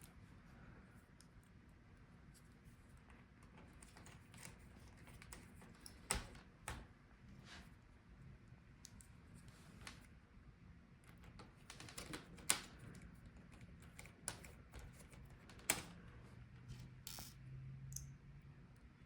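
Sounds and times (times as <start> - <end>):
metal laptop parts clicking: 11.1 - 16.0, 16.7 - 18.1.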